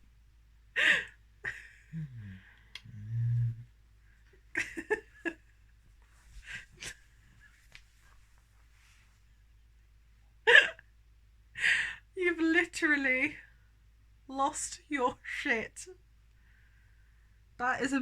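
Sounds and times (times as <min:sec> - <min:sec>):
man making strange vocal noises: 0:01.9 - 0:03.7.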